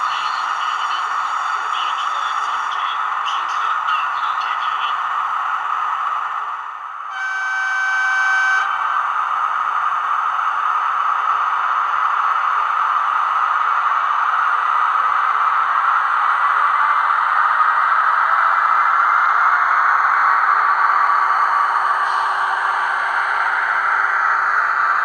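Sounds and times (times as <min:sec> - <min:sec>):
model locomotive horn blast: 0:07.1 - 0:08.8.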